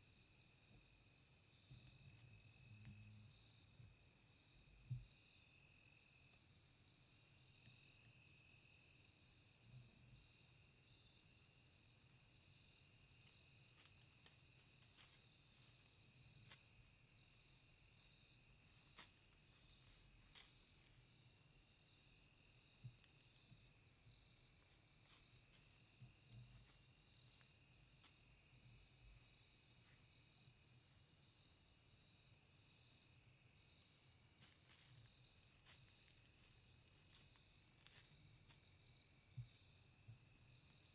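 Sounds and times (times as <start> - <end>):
insects trilling: 10.2 - 40.9.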